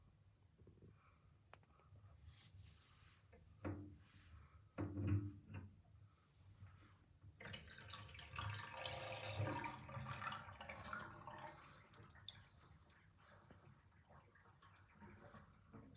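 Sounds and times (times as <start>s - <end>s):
bathtub water draining gurgling: 7.4s - 15.9s.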